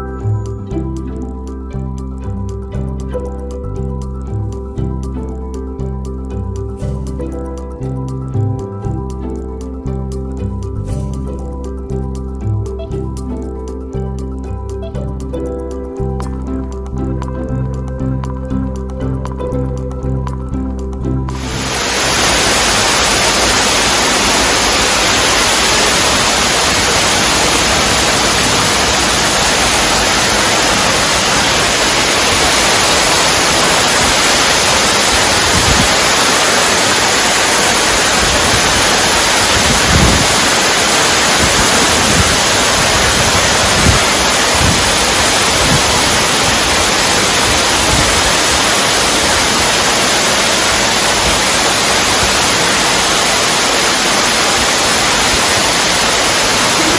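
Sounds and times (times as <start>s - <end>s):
underground waterfall rushing: 21.3s - 56.9s.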